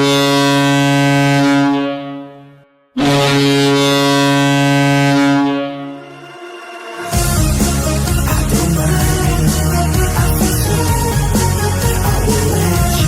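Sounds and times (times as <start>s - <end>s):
goal horn blasts: 3.0s - 8.2s.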